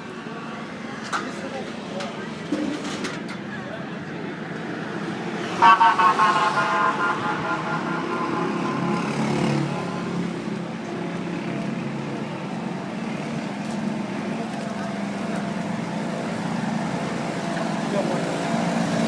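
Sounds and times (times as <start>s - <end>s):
city street traffic: 0.0s - 19.0s
vehicle horn honking: 5.6s - 10.5s.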